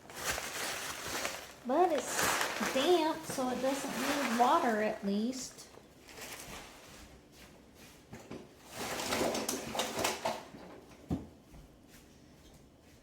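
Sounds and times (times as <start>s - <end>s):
rustling and scraping of bark mix: 0.0s - 5.4s.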